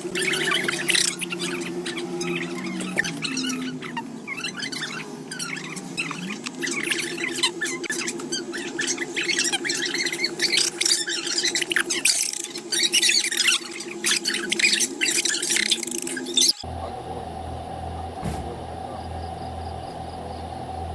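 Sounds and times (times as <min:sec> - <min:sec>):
chicks peeping: 0:00.0 - 0:16.6
steady low hum: 0:00.0 - 0:20.9.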